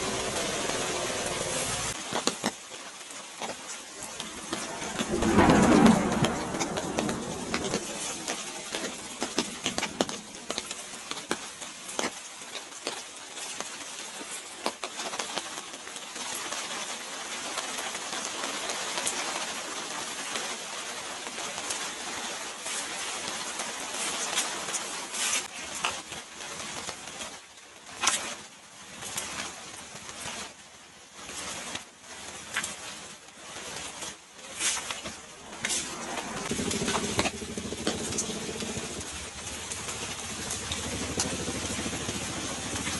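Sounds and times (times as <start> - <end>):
rain hissing: 0.0 - 12.0, 32.0 - 42.9
raindrops tapping on surfaces: 0.0 - 42.9.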